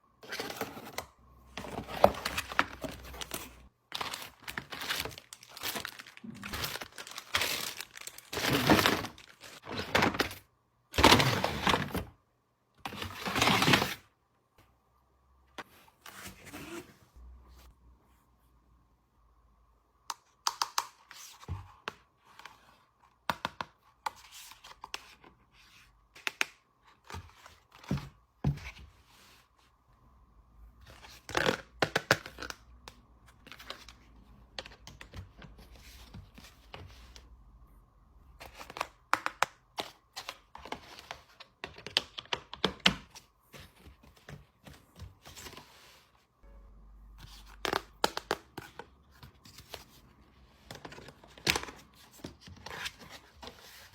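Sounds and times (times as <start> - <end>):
packaging tearing and crinkling: 4.0 - 9.6.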